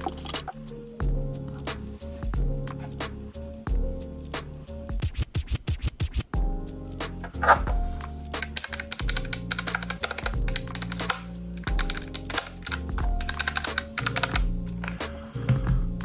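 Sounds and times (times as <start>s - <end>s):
background music with bass line: 0.0s - 16.0s
mechanical keyboard typing: 8.4s - 15.0s.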